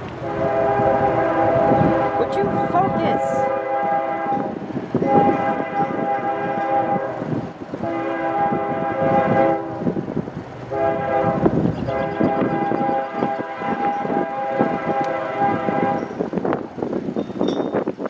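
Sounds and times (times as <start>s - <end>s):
train noise: 0.0s - 18.0s
locomotive air horn chord: 0.2s - 9.9s, 10.7s - 16.2s.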